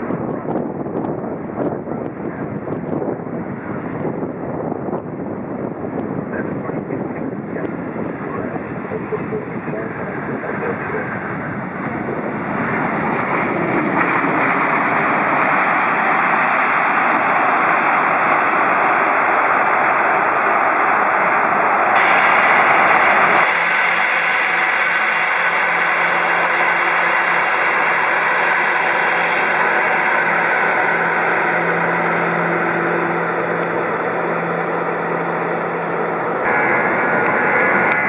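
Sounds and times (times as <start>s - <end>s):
jet engines rushing: 0.0s - 38.0s.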